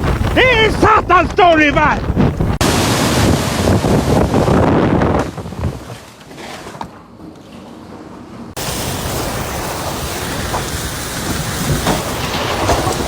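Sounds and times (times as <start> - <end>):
strong wind on microphone: 0.0 - 6.0.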